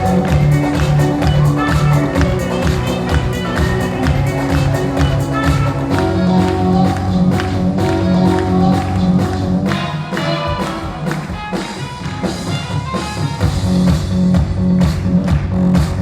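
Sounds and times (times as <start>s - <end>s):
dance music over sound system: 0.0s - 11.5s.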